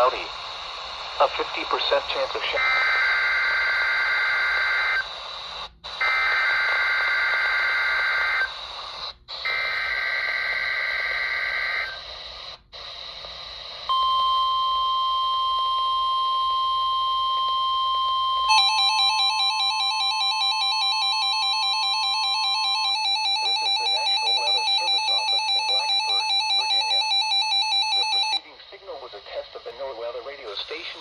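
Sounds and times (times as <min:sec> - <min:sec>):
steady warning alarm tone: 0:00.8 - 0:12.6, 0:13.7 - 0:28.4
two-tone data warble: 0:13.9 - 0:28.5
radio alert beeping rapidly: 0:17.8 - 0:28.5.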